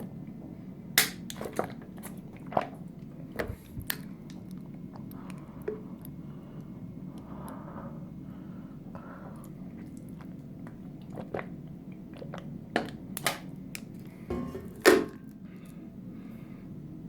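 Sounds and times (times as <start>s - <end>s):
person gulping water: 9.8s - 12.8s.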